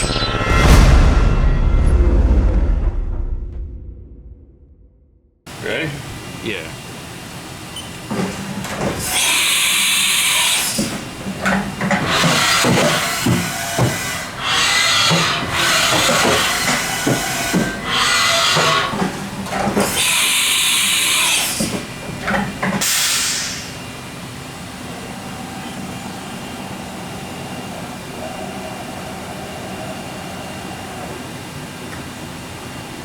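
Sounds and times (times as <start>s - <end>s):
machine hissing bursts: 5.5s - 31.9s.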